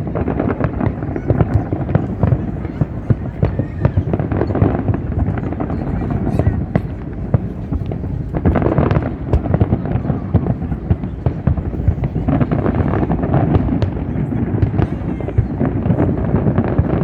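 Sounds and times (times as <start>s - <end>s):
fireworks bangs and crackles: 0.0s - 17.0s
low rumble: 4.2s - 14.4s.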